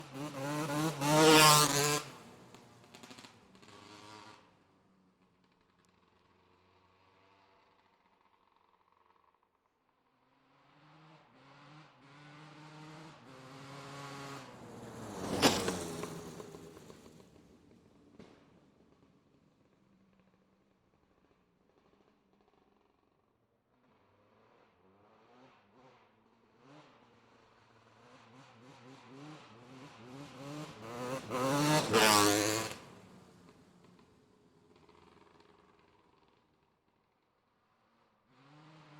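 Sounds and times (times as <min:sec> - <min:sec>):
racing motorcycle accelerating past: 0:00.0 - 0:04.5, 0:10.6 - 0:17.5, 0:28.1 - 0:34.1, 0:38.2 - 0:38.9.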